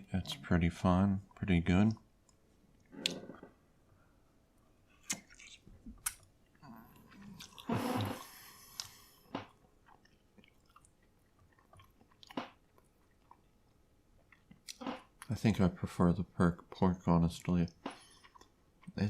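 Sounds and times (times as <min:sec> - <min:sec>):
person chewing food: 0:04.7 - 0:15.3, 0:17.4 - 0:19.0.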